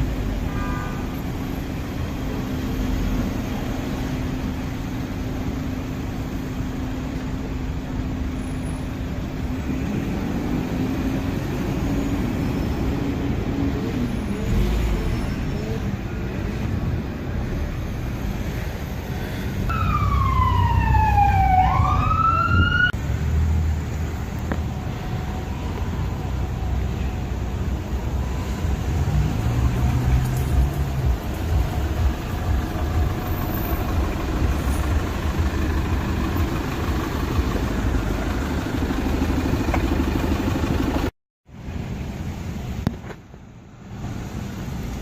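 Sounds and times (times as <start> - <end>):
traffic noise: 0.0 - 45.0
vehicle engine drone: 0.0 - 45.0
emergency vehicle siren: 19.7 - 23.0, 24.4 - 41.1.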